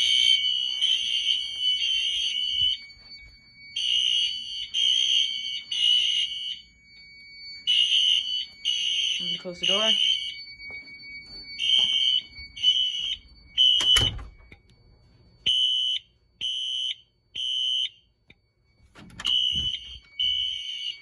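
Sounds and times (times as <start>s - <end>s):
fire alarm horns: 0.0s - 21.0s
door thudding shut: 13.8s - 14.5s.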